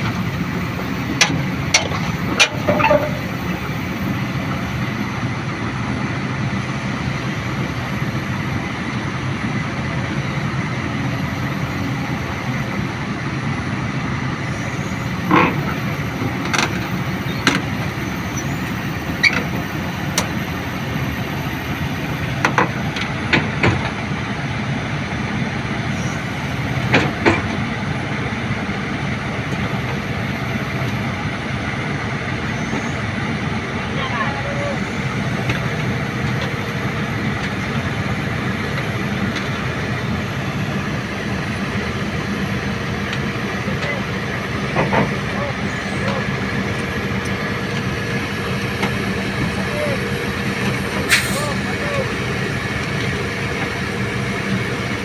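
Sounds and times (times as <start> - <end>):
diesel engine running: 0.0 - 55.0
sharp metal clanks and knocks: 1.2 - 3.4.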